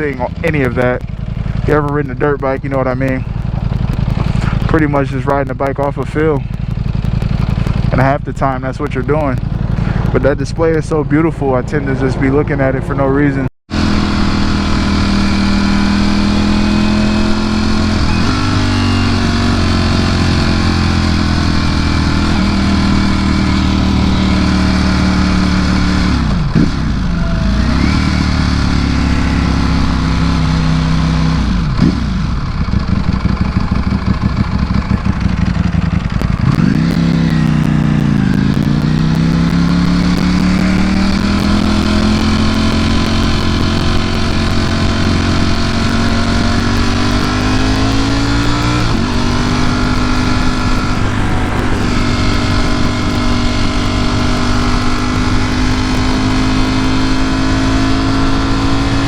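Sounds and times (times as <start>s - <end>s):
motorcycle engine running: 0.0s - 59.0s.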